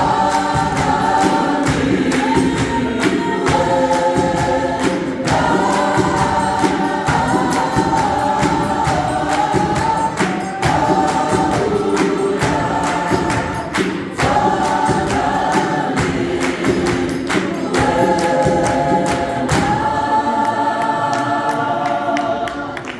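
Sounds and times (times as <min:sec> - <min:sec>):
choir singing in harmony: 0:00.0 - 0:22.9
hand claps: 0:00.0 - 0:22.9.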